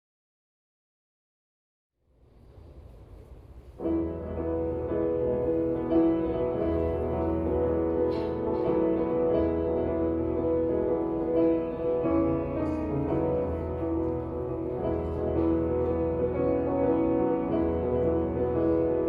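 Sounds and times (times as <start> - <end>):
piano chords over low bass: 3.8 - 19.0.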